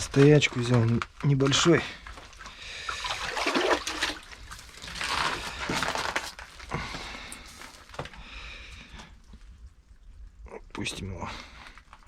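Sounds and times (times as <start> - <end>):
wet handling noises: 0.0 - 8.2
water splashing and sloshing: 0.0 - 12.0.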